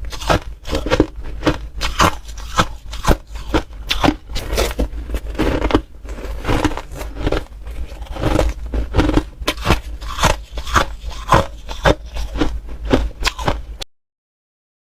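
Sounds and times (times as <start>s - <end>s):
ice being chewed: 0.0s - 13.8s.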